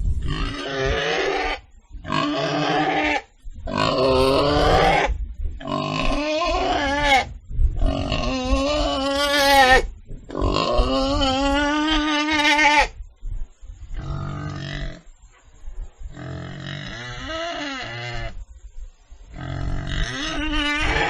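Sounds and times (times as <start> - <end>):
pig calling loudly: 19.4 - 21.0.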